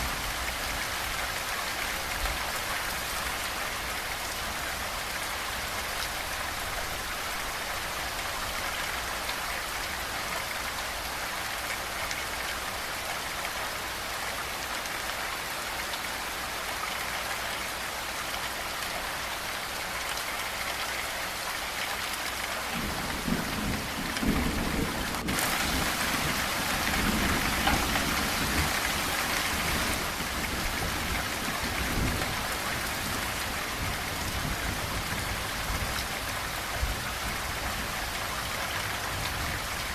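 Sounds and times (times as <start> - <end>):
heavy rain hissing: 22.4 - 39.9
thunder rumbling: 22.7 - 36.0.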